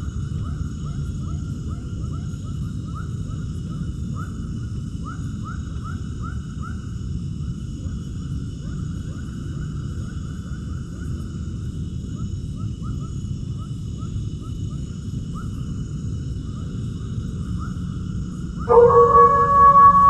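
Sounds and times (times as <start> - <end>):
animal chirps rising: 18.7 - 20.0
loud held tone with overtones: 18.7 - 20.0
low rumbling noise: 18.7 - 20.0.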